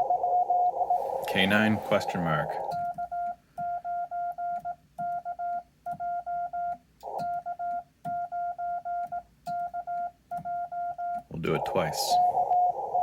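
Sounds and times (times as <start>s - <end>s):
morse code tone: 0.0s - 13.0s
burst of radio noise: 0.9s - 2.7s, 11.4s - 13.0s.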